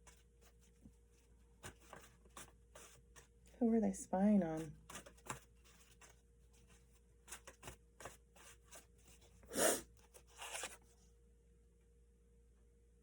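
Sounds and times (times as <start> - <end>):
cards rustling: 0.0 - 3.4, 4.6 - 9.3, 10.0 - 10.8
cards tapping and sliding: 1.6 - 3.3, 4.8 - 6.1, 7.3 - 8.9, 10.2 - 10.8.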